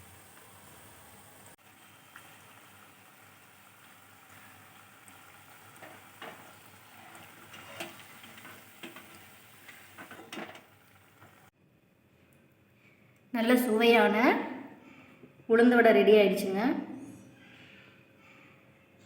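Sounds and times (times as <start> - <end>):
food deep-frying in oil: 0.0 - 11.5.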